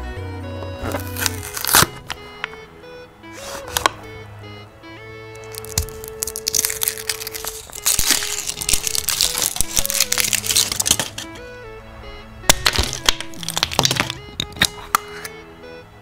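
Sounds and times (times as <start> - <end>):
background music: 0.0 - 16.0
foil wrapper crinkling: 0.9 - 2.2, 5.4 - 11.4, 12.5 - 14.8
chocolate shell cracking: 0.9 - 2.5, 5.4 - 11.4, 12.5 - 15.3.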